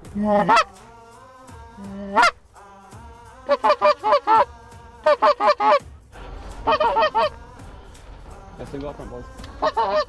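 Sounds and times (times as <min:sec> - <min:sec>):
goose clucking: 0:00.0 - 0:00.8, 0:01.8 - 0:02.4, 0:03.5 - 0:05.8, 0:06.5 - 0:07.4, 0:09.4 - 0:10.0
goose honking: 0:00.0 - 0:00.8, 0:01.8 - 0:02.4, 0:03.5 - 0:05.8, 0:06.5 - 0:07.4, 0:09.4 - 0:10.0.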